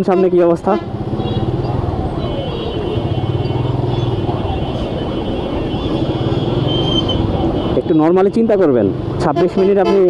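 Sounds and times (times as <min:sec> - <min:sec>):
road traffic: 0:00.0 - 0:10.0
motorcycle engine running: 0:00.8 - 0:07.5.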